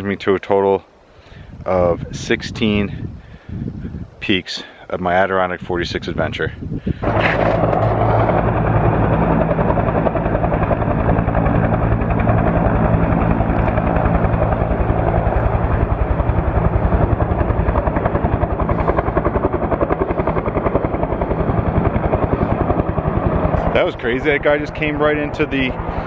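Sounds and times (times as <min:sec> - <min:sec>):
helicopter rotor chop: 0:07.0 - 0:26.0.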